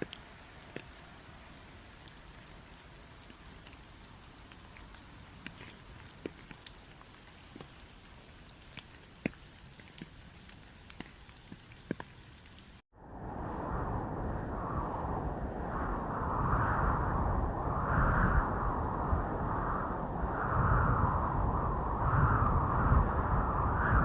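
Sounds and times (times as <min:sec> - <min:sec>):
raindrops ticking: 0:00.0 - 0:12.8.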